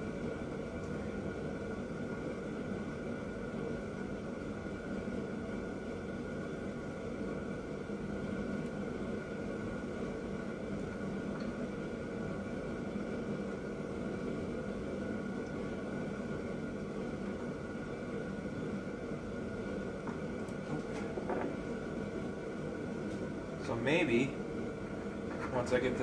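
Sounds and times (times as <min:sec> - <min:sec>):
steady mechanical hum: 0:00.0 - 0:26.0
constant hiss: 0:07.1 - 0:26.0.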